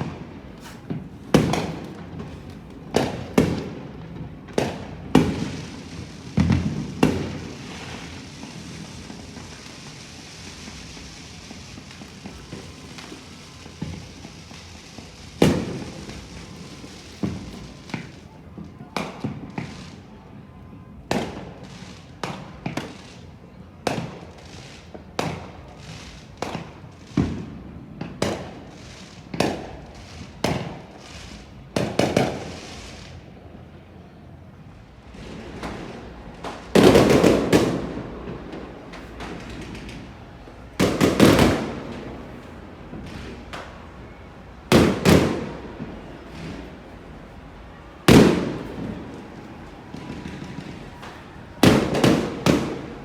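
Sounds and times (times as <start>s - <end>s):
loud firework booms: 0.0s - 18.2s, 35.1s - 53.0s
fireworks bangs with echo: 0.0s - 53.0s.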